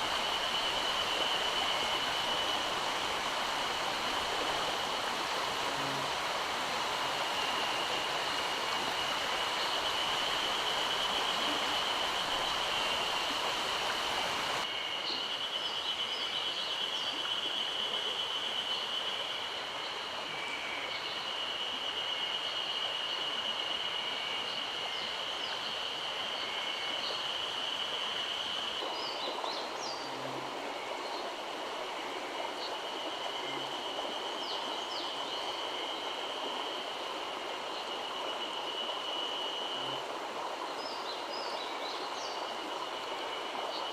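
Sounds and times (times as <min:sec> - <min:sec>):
stream rushing over rocks: 0:00.0 - 0:14.7
high-pitched whine: 0:00.0 - 0:15.4.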